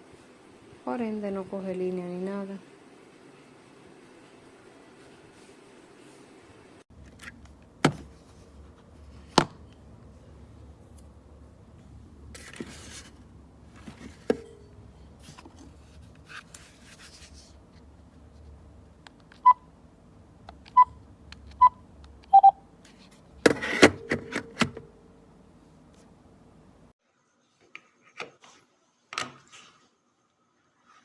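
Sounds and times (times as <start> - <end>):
phone handset key beeps: 22.3 - 22.6.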